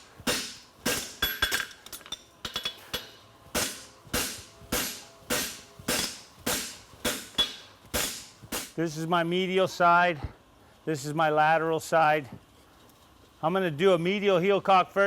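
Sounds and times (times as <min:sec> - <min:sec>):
hammer striking metal on anvil: 0:00.0 - 0:08.8.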